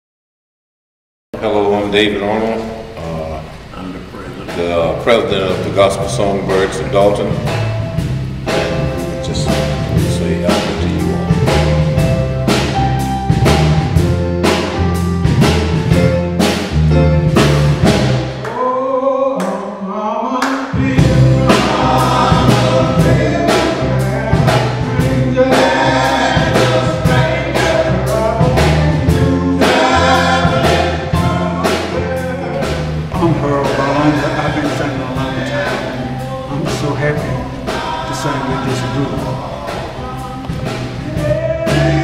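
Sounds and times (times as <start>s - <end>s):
bass line: 1.4s - 18.6s, 20.8s - 42.0s
drums: 2.9s - 18.6s, 20.7s - 42.0s
men's vocal group singing: 3.7s - 7.8s, 8.4s - 12.6s, 18.0s - 42.0s.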